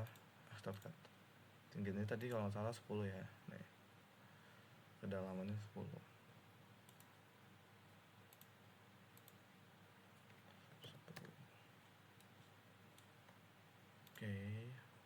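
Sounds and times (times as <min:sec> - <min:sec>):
computer mouse clicks: 0:00.0 - 0:01.2, 0:06.8 - 0:07.2, 0:08.3 - 0:09.4, 0:10.2 - 0:11.4, 0:12.1 - 0:13.4, 0:14.0 - 0:14.3
low background hiss: 0:00.0 - 0:15.0.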